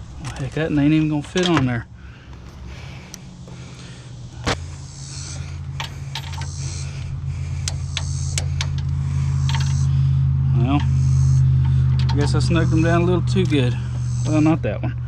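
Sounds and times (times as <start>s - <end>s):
steady low hum: 0.0s - 15.0s
hand tools clinking on nuts: 5.8s - 6.6s.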